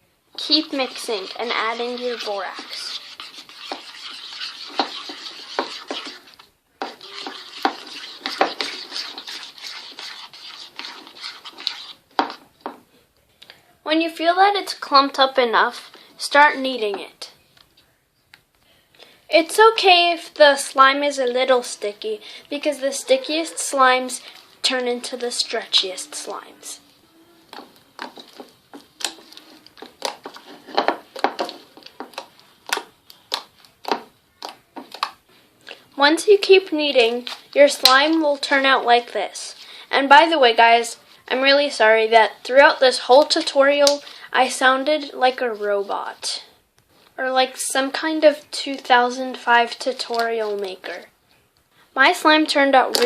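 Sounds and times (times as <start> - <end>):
spoon scraping bowl of slime: 0.4 - 12.5, 27.5 - 38.8.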